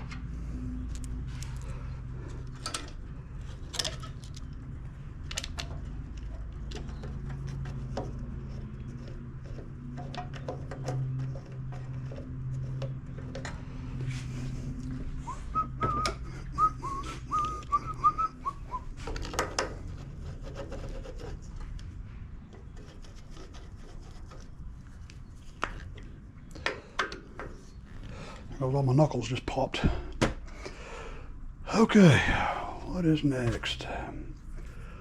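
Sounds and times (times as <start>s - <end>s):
person whistling a tune: 15.2s - 18.9s
knuckles popping: 15.8s - 18.8s.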